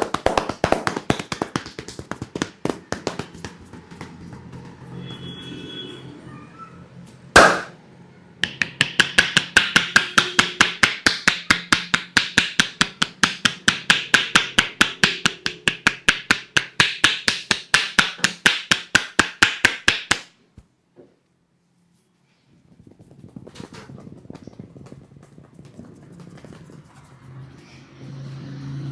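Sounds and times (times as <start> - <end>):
hands slapping a head: 0.0 - 4.8, 7.4 - 7.7, 8.4 - 20.3.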